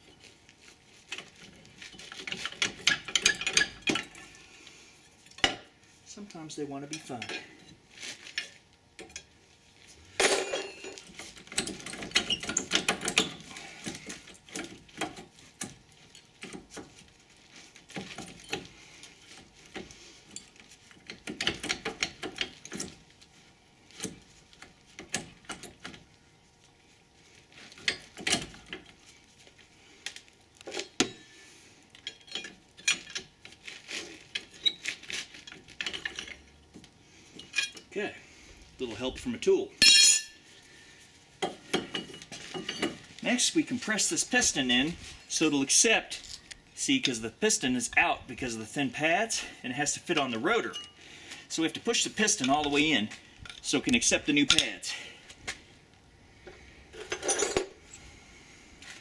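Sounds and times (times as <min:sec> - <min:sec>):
metal brake caliper clinking and scraping: 0:39.8 - 0:40.4.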